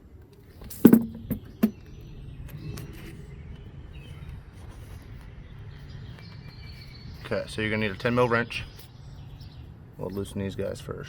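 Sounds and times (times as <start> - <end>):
outdoor background: 0.0 - 11.0
faint birdsong: 0.4 - 11.0
sharp metallic knocks: 0.8 - 1.8.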